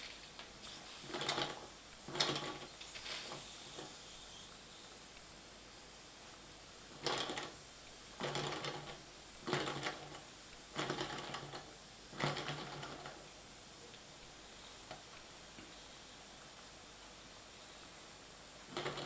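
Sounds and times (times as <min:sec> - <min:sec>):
steam engine spurting steam: 0:02.2 - 0:04.9.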